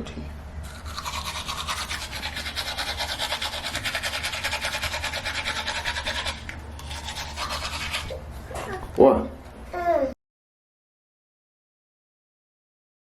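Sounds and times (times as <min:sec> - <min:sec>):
toothbrush scrubbing teeth: 0:00.6 - 0:08.3.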